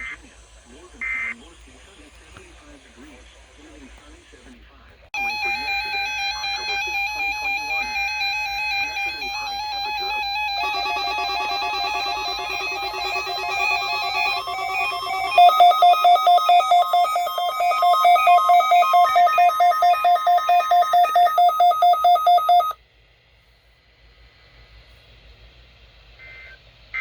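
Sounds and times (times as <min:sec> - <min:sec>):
electronic beeping tones: 0:05.2 - 0:22.8.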